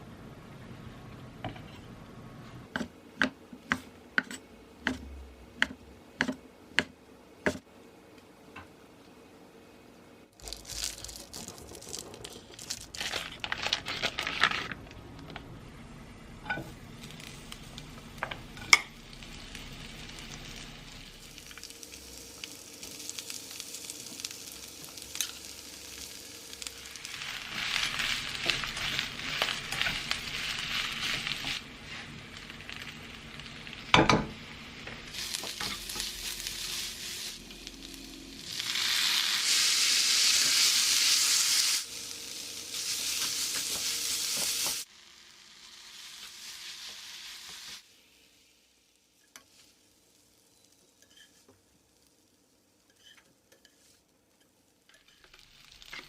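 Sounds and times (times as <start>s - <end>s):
food sizzling in a pan: 16.4s - 56.0s.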